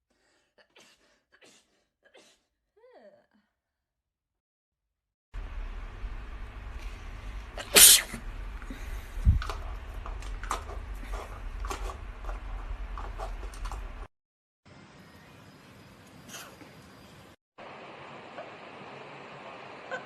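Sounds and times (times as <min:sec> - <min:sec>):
microphone handling rumble: 0:05.9 - 0:14.1
loud sneeze: 0:07.6 - 0:08.2.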